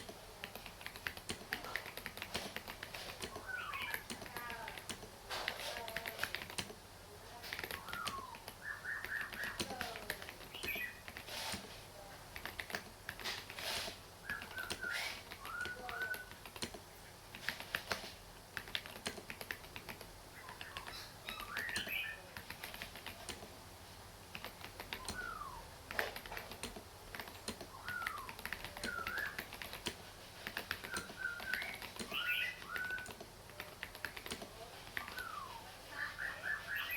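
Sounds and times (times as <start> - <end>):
mechanical keyboard typing: 0.0 - 6.8, 7.4 - 23.6, 24.2 - 35.5
bird chirps: 3.2 - 4.5, 7.7 - 11.0, 14.2 - 16.4, 20.3 - 22.3, 24.9 - 25.8, 27.7 - 29.7, 30.7 - 33.2, 35.0 - 36.9.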